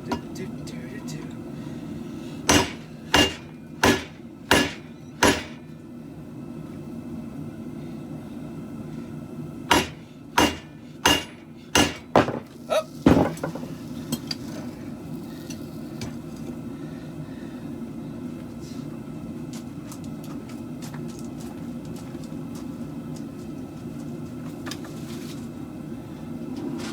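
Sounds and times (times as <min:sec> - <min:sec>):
steady low hum: 0:00.0 - 0:26.9
hammer striking steel blade: 0:02.5 - 0:05.6, 0:09.7 - 0:12.1.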